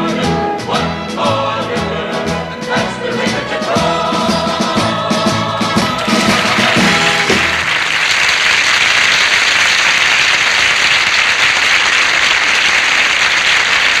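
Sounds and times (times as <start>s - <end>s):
studio audience applauding: 3.9s - 14.0s.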